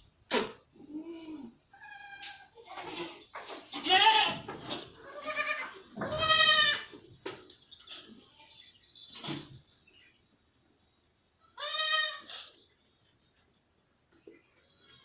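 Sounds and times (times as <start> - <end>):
goats bleating: 1.0 - 6.9, 11.6 - 12.5.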